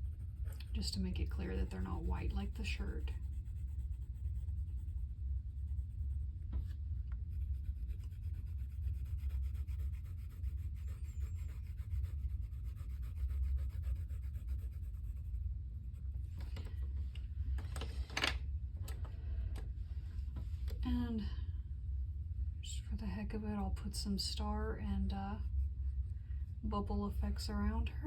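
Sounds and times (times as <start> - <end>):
pencil shading on paper: 0.0 - 6.2, 7.1 - 15.4
steady low hum: 0.0 - 28.0.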